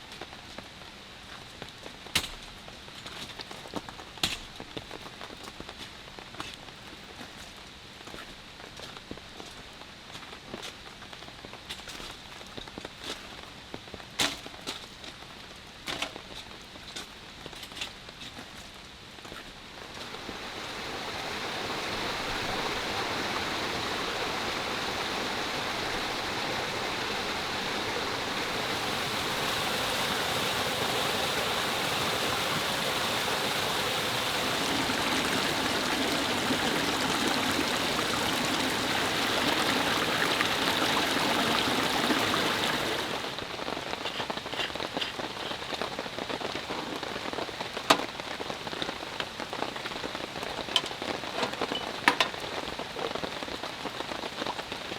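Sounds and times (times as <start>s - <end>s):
rain falling in dense hiss: 0.0s - 54.9s
sharp raindrop taps: 19.9s - 44.4s.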